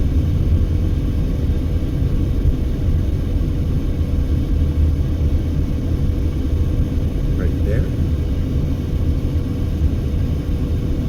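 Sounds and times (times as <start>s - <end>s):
car engine rumble and tyre noise: 0.0s - 11.0s.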